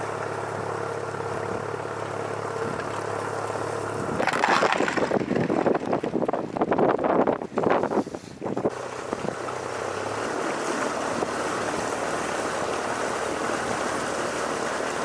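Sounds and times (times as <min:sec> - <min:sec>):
vehicle engine droning: 0:00.0 - 0:06.6
wind buffeting microphone: 0:03.9 - 0:15.0.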